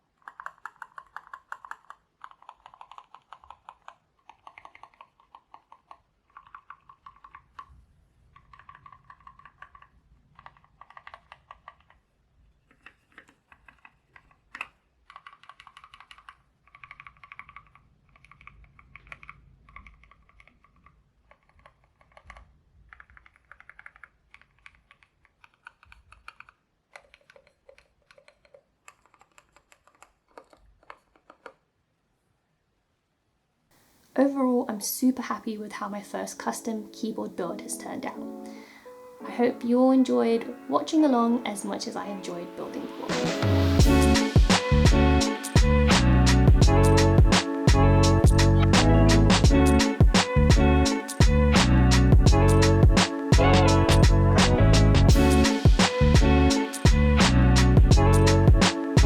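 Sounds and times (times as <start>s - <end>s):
mechanical keyboard typing: 0.1s - 7.7s, 8.3s - 12.0s, 12.7s - 31.6s.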